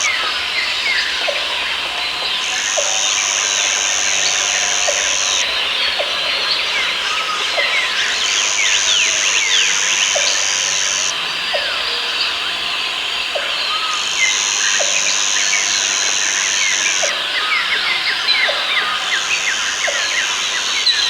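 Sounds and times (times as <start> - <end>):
high insect buzz: 0.0 - 5.7, 7.0 - 11.2, 13.8 - 17.6
birds chirping in chorus: 0.0 - 21.0.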